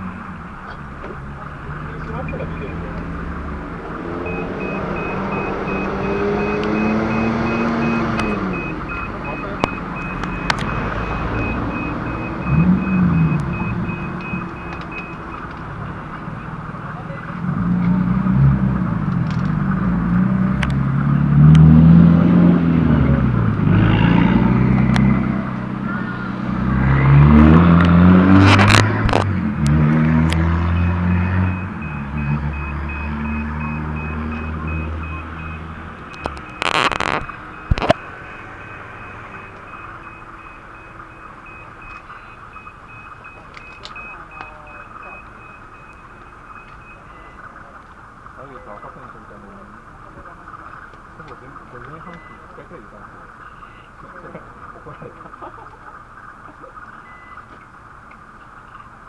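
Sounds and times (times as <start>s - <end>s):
diesel locomotive engine running: 0.0s - 42.9s
wheels clacking on rails: 0.0s - 59.0s
train coaches rumbling: 22.6s - 36.6s
level-crossing warning bell ringing: 30.4s - 36.6s.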